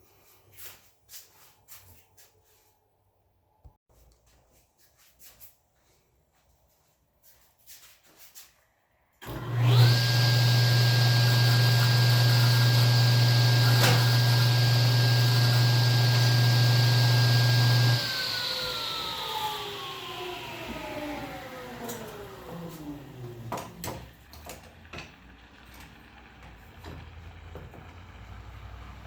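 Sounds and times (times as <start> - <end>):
electric motor humming and whining: 9.2 - 23.8.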